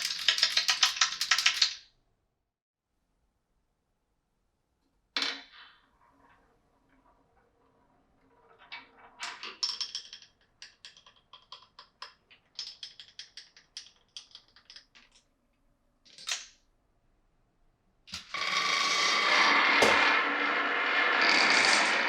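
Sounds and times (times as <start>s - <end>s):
marbles clattering down wooden track: 0.0s - 1.8s, 8.5s - 15.2s, 18.2s - 22.0s.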